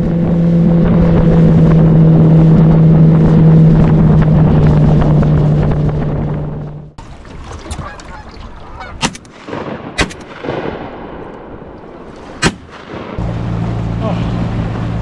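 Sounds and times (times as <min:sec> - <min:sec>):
boat engine cutting off: 0:00.0 - 0:08.2, 0:13.2 - 0:15.0
geese honking: 0:07.8 - 0:09.0
shotgun blasts: 0:09.0 - 0:13.2.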